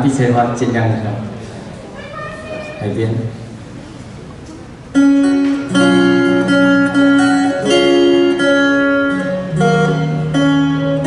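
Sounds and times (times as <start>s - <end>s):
picked electric guitar notes: 4.9s - 11.0s.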